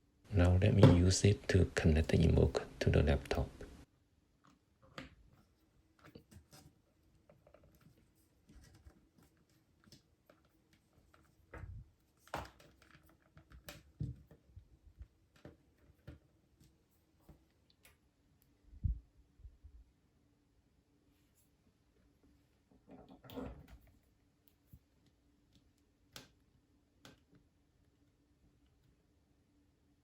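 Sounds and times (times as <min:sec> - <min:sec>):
hands handling cable and hardware: 0:04.5 - 0:18.0.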